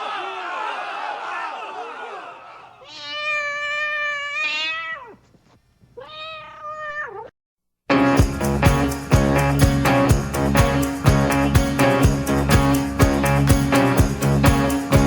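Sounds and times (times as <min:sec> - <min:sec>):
cat yowling: 0:02.8 - 0:05.3, 0:06.0 - 0:07.3
music: 0:07.9 - 0:15.0.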